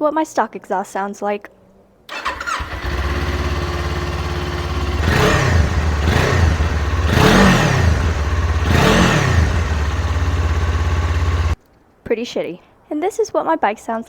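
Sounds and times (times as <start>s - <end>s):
motorcycle engine idling and revving: 2.1s - 11.6s.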